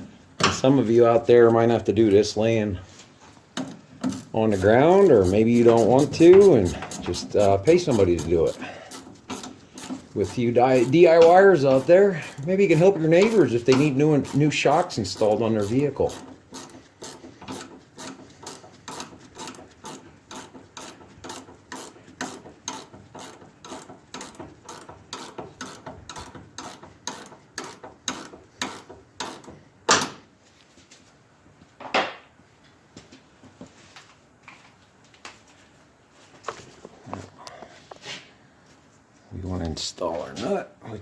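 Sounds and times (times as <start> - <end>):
socket ratchet clicking: 4.0 - 29.5.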